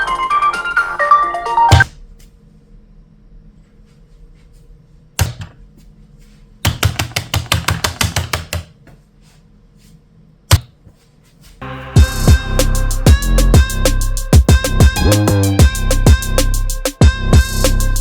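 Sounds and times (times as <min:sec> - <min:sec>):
mechanical keyboard keystrokes: 0:06.7 - 0:08.7.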